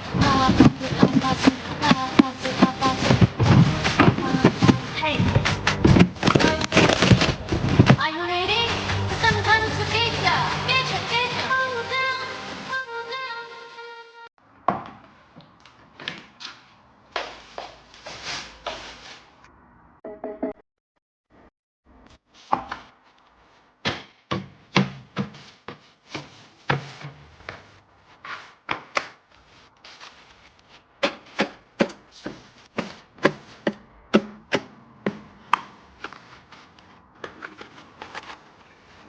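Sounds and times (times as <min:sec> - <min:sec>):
kitchen items knocking on hard surface: 0:00.1 - 0:08.0, 0:32.8 - 0:35.6.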